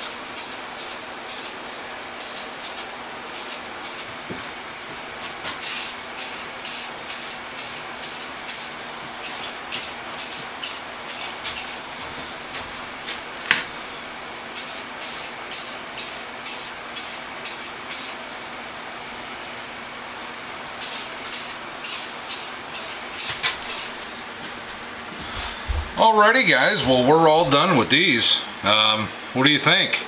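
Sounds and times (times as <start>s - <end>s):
spray paint can hissing: 0.0s - 4.1s, 5.6s - 11.8s, 14.6s - 18.2s, 20.8s - 24.0s.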